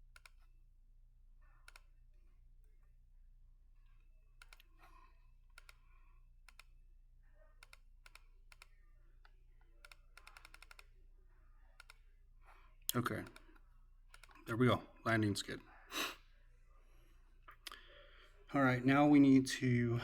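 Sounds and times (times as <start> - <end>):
mouse and keyboard clicks: 0.1 - 0.5, 1.6 - 1.9, 4.4 - 4.9, 5.5 - 6.7, 7.6 - 11.0, 11.8 - 12.1, 13.1 - 14.5.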